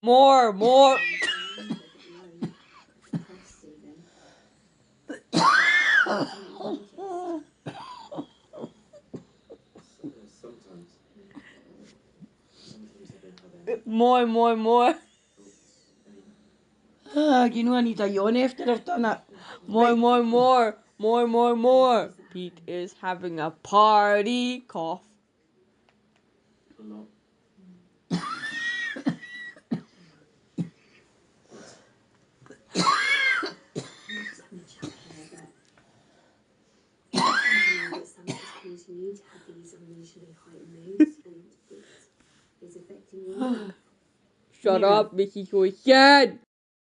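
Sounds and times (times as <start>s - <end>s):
person coughing: 1.1s - 3.4s, 5.1s - 6.8s, 7.7s - 10.0s, 28.1s - 29.9s, 32.7s - 35.1s, 37.2s - 38.6s.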